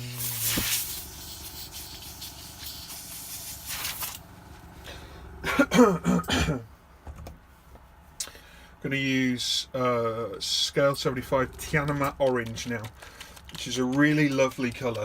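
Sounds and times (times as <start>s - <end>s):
airbrush hissing: 0.0s - 4.2s.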